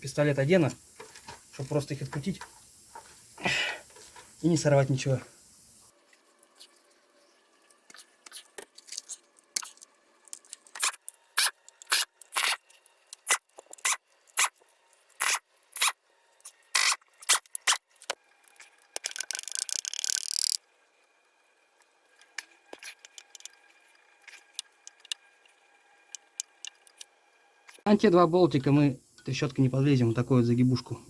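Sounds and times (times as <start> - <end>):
ratchet wrench clicking: 19.0 - 20.6.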